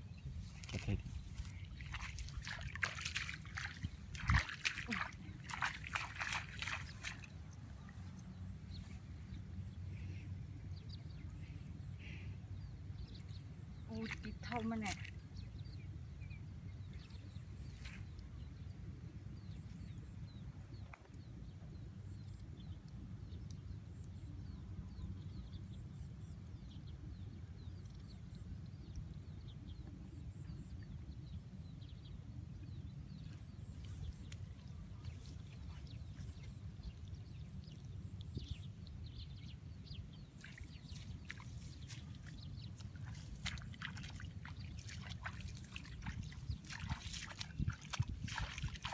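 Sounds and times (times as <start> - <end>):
water splashing and dripping: 0.6 - 7.4, 40.4 - 48.9.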